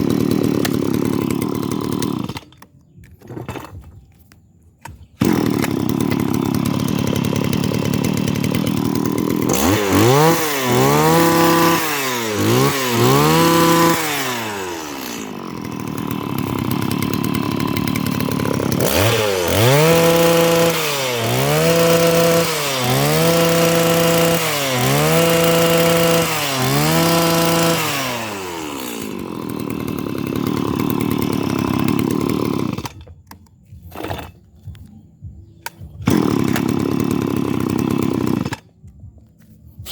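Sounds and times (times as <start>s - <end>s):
brush cutter engine revving: 0.0s - 4.2s, 4.8s - 39.9s.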